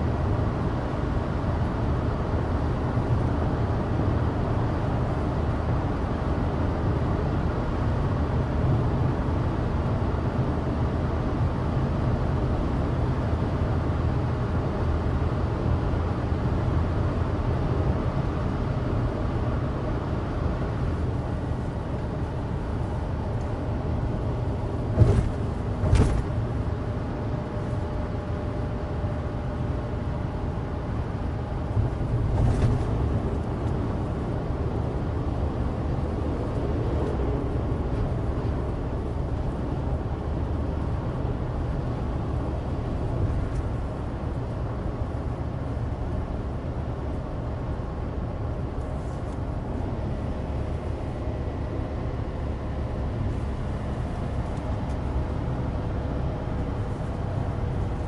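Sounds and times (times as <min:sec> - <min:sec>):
car engine and tyre drone: 0:00.0 - 0:58.0
short thumps: 0:24.9 - 0:26.4.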